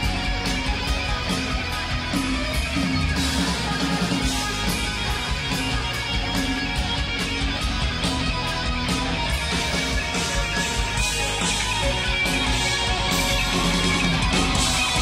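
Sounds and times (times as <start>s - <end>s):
drums and cymbals: 0.0s - 15.0s
electric guitar: 0.0s - 15.0s.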